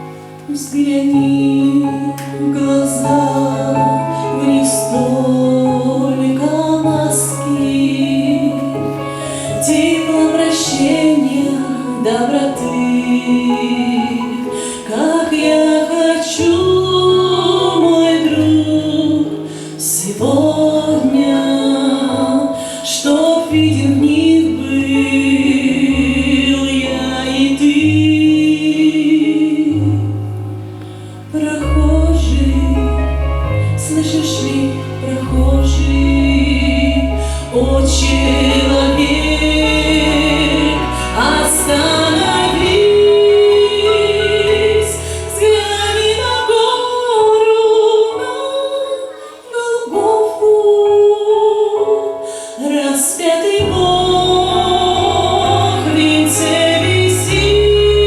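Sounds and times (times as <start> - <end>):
woman singing slow song: 0.0 - 58.0
backing track with deep bass: 30.1 - 46.5, 53.6 - 58.0.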